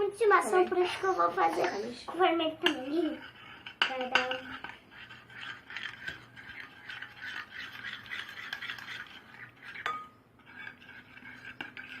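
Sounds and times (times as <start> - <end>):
utensil scraping container: 2.7 - 12.0.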